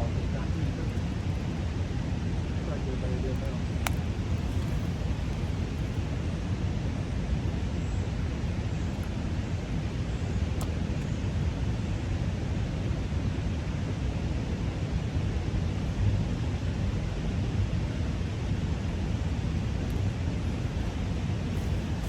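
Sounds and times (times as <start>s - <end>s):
faint ticks: 3.4s - 6.2s.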